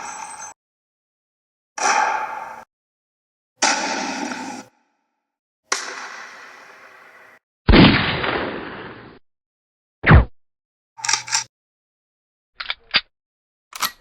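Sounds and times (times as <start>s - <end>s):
heavy gunshot: 7.7s - 9.0s
short sharp gunshot: 7.7s - 9.1s.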